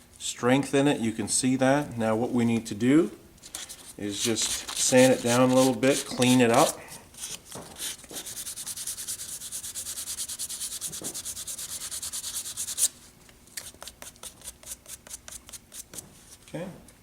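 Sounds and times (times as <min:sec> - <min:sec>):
hand sanding strokes: 0:03.6 - 0:13.0.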